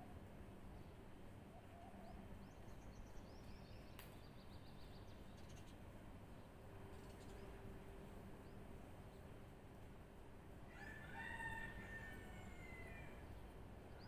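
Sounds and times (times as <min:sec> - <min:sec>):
faint birdsong chirps: 0:00.1 - 0:09.4.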